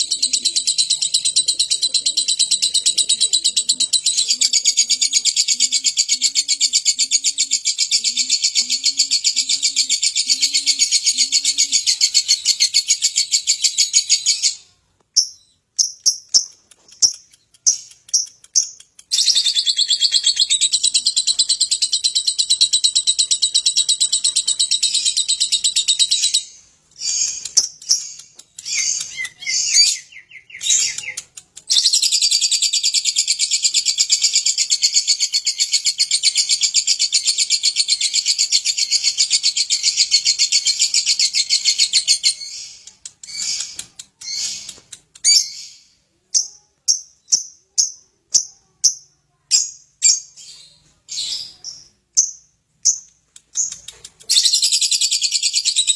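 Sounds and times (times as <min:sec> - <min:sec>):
lovebird chattering: 0:15.2 - 0:45.8.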